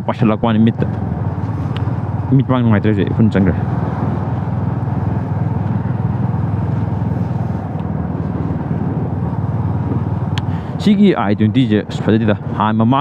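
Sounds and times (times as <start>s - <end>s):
motorcycle engine rumbling: 0.0s - 13.0s.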